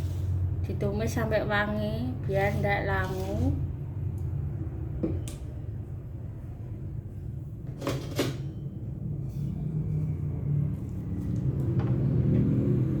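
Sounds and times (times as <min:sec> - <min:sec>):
spatula scraping a wok: 0:00.0 - 0:00.6, 0:02.2 - 0:03.7.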